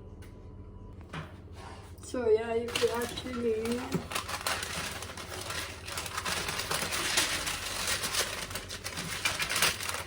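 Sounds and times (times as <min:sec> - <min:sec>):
packaging rustling: 0:02.7 - 0:10.0.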